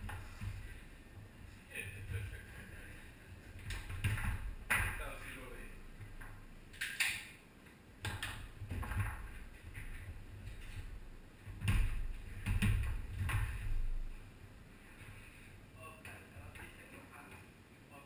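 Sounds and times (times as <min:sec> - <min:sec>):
foosball ball knocks and clacks: 0:08.1 - 0:10.8.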